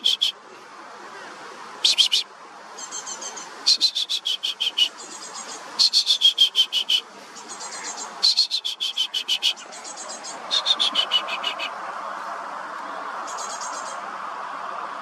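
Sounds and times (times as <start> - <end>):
songbird singing loud phrases: 0.0 - 0.5, 1.8 - 11.8, 13.3 - 14.0
fainter higher-pitched birdsong: 2.8 - 11.7, 13.3 - 14.0.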